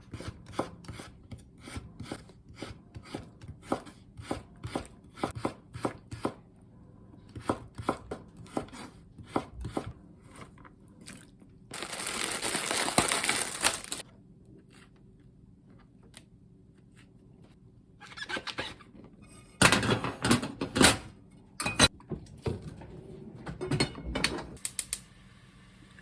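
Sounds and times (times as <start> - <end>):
knife chopping on cutting board: 0.0 - 6.4, 7.4 - 10.0.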